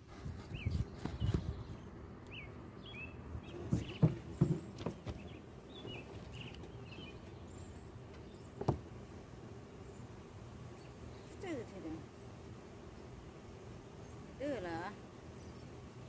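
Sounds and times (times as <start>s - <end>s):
outdoor background noise: 0.0s - 16.0s
small birds chirping: 0.2s - 16.0s
dull knocks: 3.6s - 6.0s, 8.6s - 8.9s.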